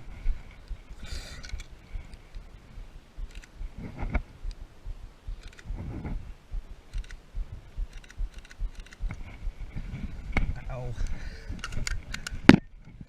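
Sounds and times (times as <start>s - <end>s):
low handling bumps: 1.6s - 13.0s
faint clicks: 3.2s - 4.6s, 5.3s - 5.8s, 6.9s - 7.2s, 7.8s - 9.2s, 10.4s - 13.0s.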